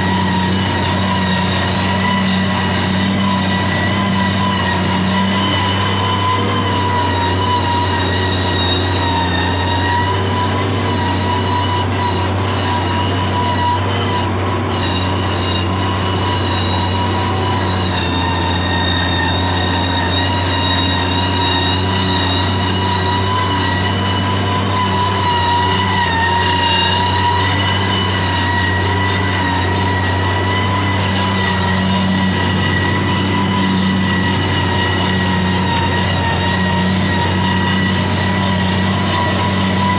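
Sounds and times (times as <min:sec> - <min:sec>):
tractor engine running under load: 0:00.0 - 0:39.9.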